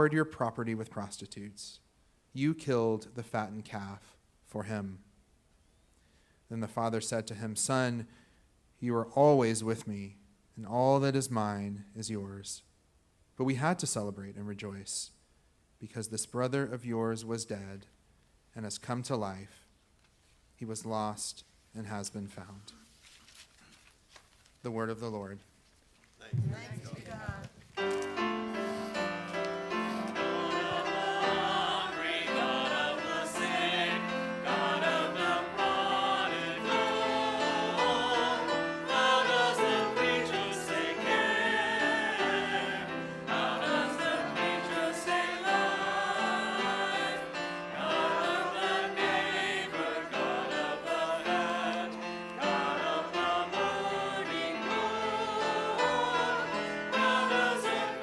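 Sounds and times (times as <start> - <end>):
congregation singing a hymn: 27.8 - 58.0
instrumental accompaniment: 27.8 - 58.0.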